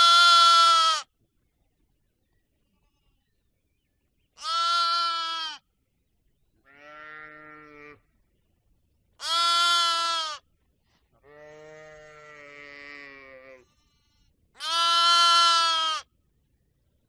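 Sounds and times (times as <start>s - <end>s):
animals bleating: 0.0s - 1.0s, 4.4s - 5.6s, 6.6s - 8.1s, 9.2s - 10.4s, 11.2s - 16.1s.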